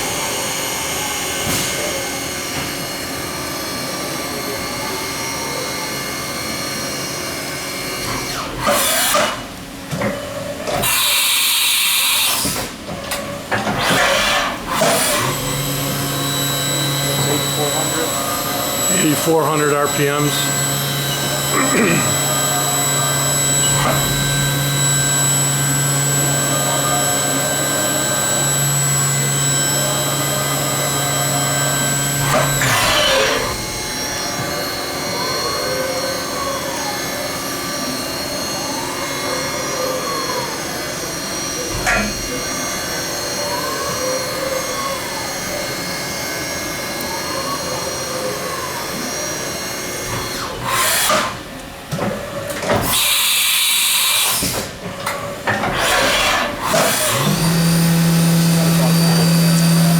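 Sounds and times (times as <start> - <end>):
spindle whine: 15.2 - 37.9, 57.0 - 59.9.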